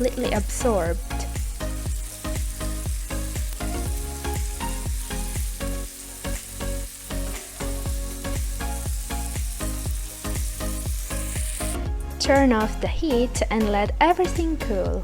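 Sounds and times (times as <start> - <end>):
vegetables sizzling in a frying pan: 0.0 - 11.9.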